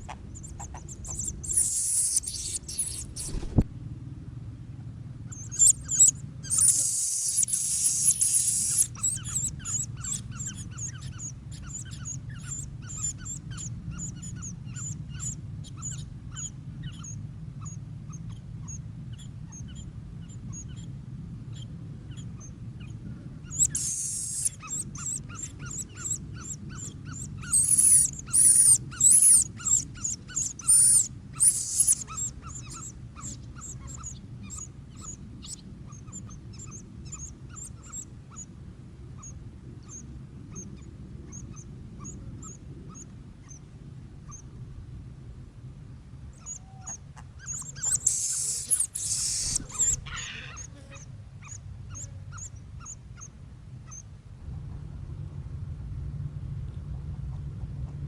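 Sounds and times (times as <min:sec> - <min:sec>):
chicks peeping: 0:00.0 - 0:03.6, 0:05.5 - 0:11.2, 0:23.5 - 0:34.2, 0:47.4 - 0:50.7
harsh hissing screeches: 0:47.9 - 0:50.6.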